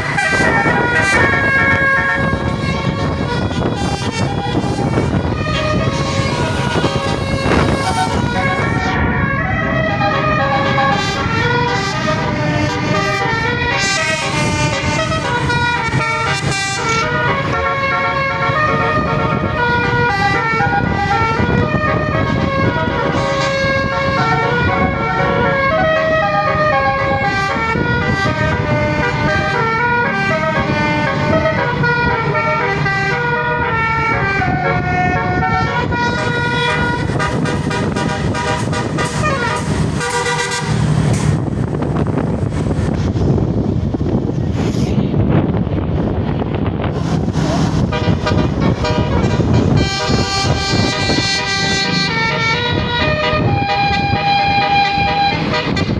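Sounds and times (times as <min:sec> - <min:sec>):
bus air horn melody: 0:00.0 - 0:42.4, 0:47.4 - 0:55.9
low rumble: 0:35.0 - 0:49.9.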